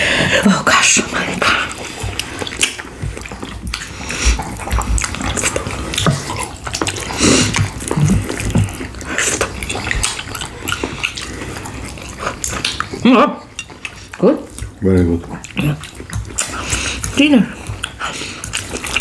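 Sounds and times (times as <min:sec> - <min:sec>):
wet chewing and slurping: 0:00.0 - 0:19.0.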